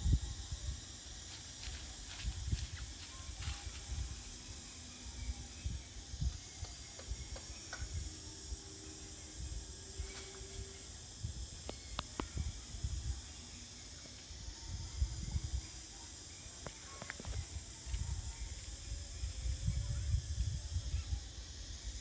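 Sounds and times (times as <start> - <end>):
high insect-like hiss: 0.0 - 22.0
wind buffeting microphone: 17.3 - 21.3.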